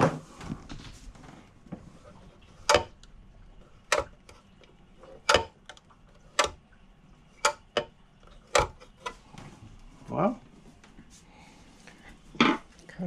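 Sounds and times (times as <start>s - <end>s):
electrical switch clicking: 5.2s - 6.6s, 7.4s - 7.9s.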